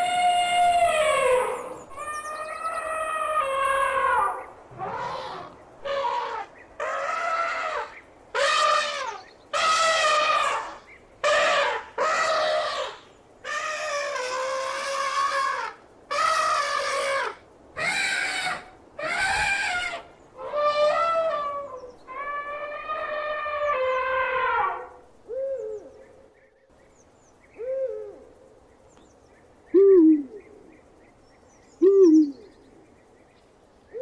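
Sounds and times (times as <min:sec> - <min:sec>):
elephant trumpeting: 0:00.0 - 0:24.9.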